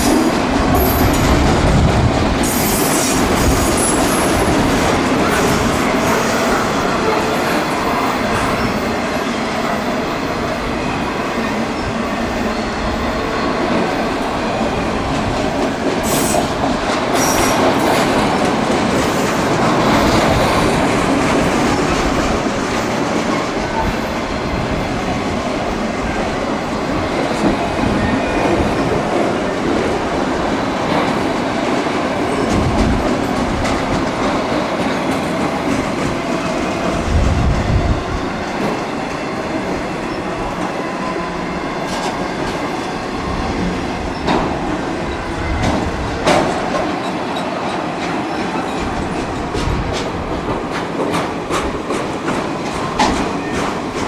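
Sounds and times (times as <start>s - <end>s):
freight train rumbling and rattling: 0.0s - 54.0s
high wheel squeal: 2.4s - 14.4s, 16.0s - 18.0s
wheels clacking over rail joints: 45.6s - 54.0s.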